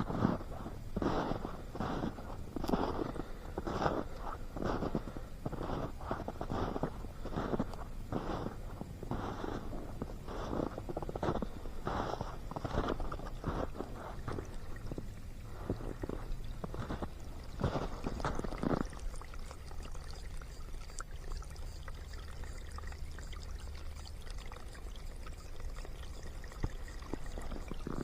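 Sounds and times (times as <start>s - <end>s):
footsteps crunching in snow: 0.0s - 14.5s, 15.6s - 18.9s
creek water trickling: 0.0s - 28.0s.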